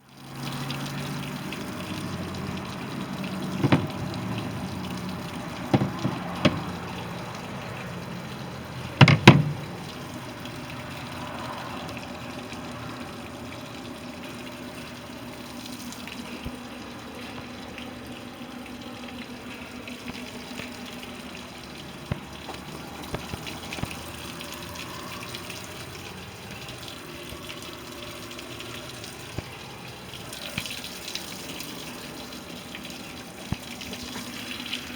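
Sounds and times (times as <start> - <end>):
running water: 0.0 - 34.9
sharp knocks: 3.5 - 4.8, 5.6 - 7.0, 9.0 - 10.1.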